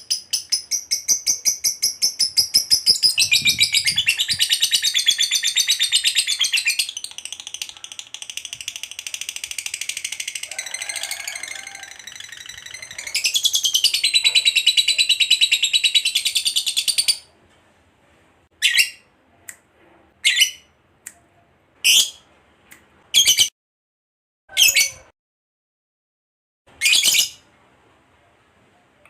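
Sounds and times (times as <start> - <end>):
bird chattering trill: 0.0 - 17.2.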